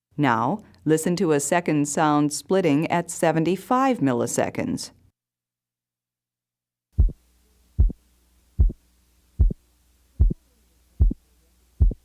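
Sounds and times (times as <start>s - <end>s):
heart beating: 7.0s - 7.2s, 7.8s - 8.0s, 8.6s - 8.8s, 9.4s - 9.6s, 10.2s - 10.4s, 11.0s - 11.2s, 11.8s - 12.0s.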